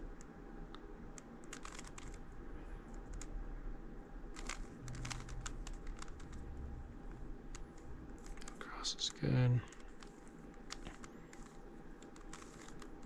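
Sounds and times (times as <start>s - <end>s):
plastic puzzle cube clicking: 1.2s - 2.2s, 4.4s - 6.4s, 9.7s - 13.0s.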